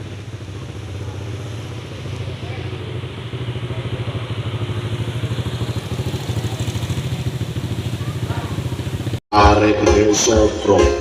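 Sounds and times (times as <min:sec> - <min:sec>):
engine idling: 0:00.0 - 0:09.2.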